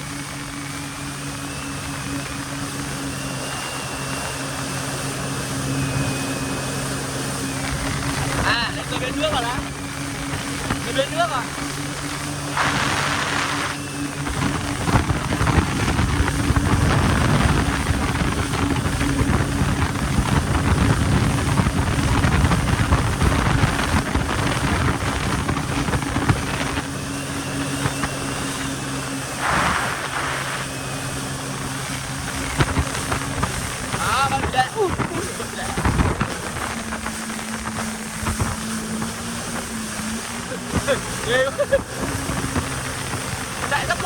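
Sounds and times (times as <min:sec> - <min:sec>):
jet ski engine running: 0:00.0 - 0:44.0
rushing water: 0:00.0 - 0:44.0
wind noise: 0:00.0 - 0:44.0
bursts of spray: 0:12.4 - 0:15.0, 0:29.3 - 0:31.5.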